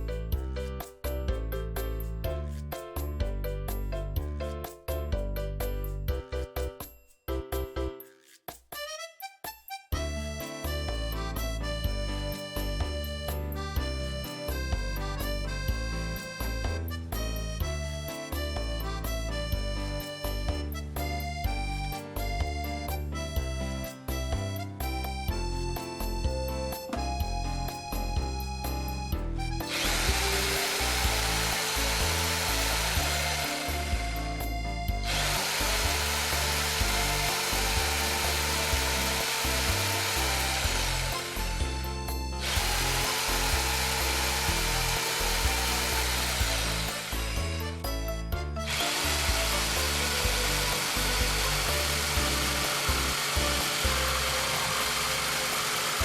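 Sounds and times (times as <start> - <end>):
background music: 0.0 - 56.0
electric power tool whining: 29.6 - 56.0.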